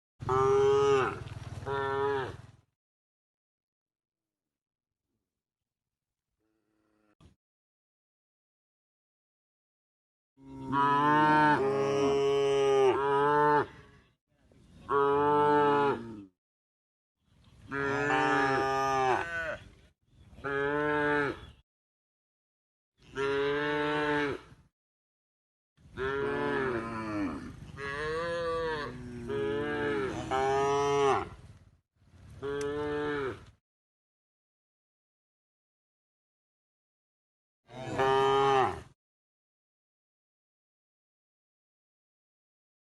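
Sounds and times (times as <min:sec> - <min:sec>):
cow mooing: 0:00.2 - 0:02.4, 0:06.4 - 0:07.2, 0:10.4 - 0:13.8, 0:14.9 - 0:16.3, 0:17.7 - 0:19.6, 0:20.4 - 0:21.5, 0:23.0 - 0:24.6, 0:25.9 - 0:31.4, 0:32.4 - 0:33.5, 0:37.7 - 0:39.0.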